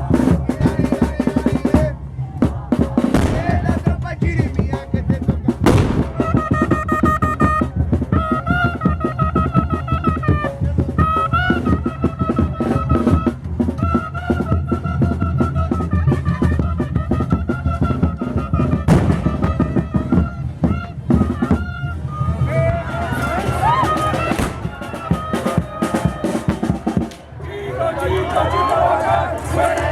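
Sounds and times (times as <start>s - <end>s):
snare and bass drum beats: 0.0s - 21.7s, 22.4s - 27.4s
high wind instrument melody: 5.6s - 27.8s.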